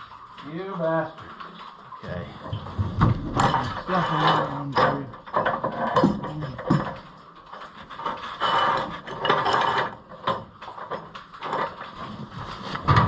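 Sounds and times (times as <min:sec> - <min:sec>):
metal chain clinking and scraping: 0:02.6 - 0:13.0.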